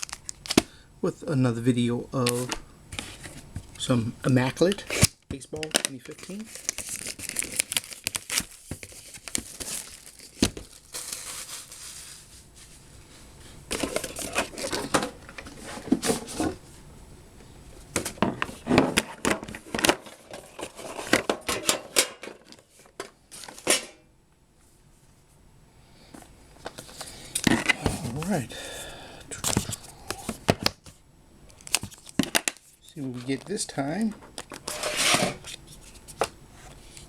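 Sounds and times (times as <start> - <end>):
plastic wrapping crinkling: 0.0 - 0.6, 4.6 - 12.8, 13.7 - 16.5.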